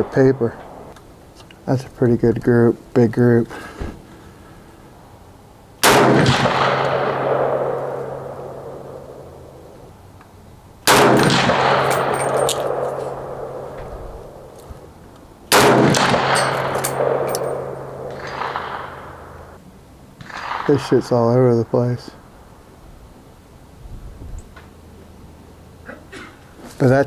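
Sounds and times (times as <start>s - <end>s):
rifle shots echoing: 0.0s - 1.8s, 5.8s - 19.6s, 20.2s - 22.8s.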